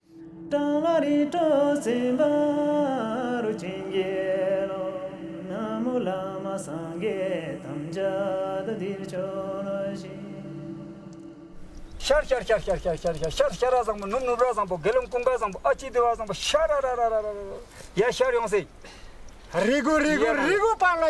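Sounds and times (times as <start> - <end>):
person singing chant-like melody: 0.1 - 11.7.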